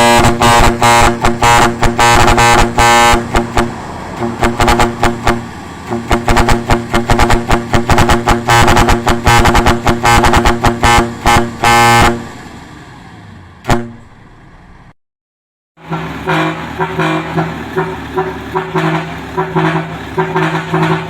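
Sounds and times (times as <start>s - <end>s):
low pulsing horn note: 0.0s - 12.3s, 15.8s - 21.0s
musical vehicle horn notes: 0.0s - 12.4s, 13.6s - 14.2s, 15.8s - 21.0s.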